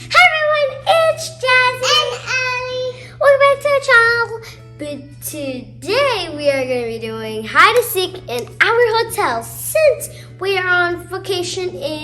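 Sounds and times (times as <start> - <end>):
young girl singing: 0.0 - 3.2.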